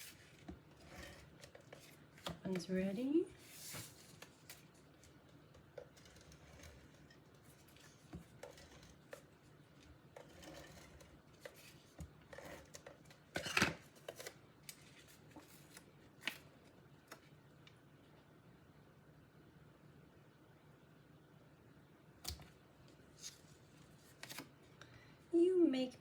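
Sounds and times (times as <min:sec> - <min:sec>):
paper rustling: 0:03.4 - 0:05.2, 0:23.1 - 0:24.5.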